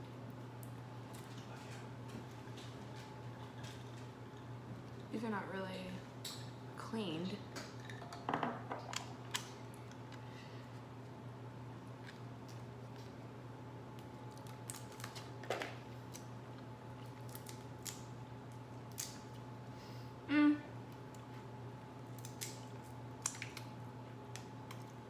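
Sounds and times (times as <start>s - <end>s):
low background hum: 0.0s - 25.0s
seafood shells cracking: 13.9s - 16.3s, 17.0s - 19.4s, 22.1s - 25.0s.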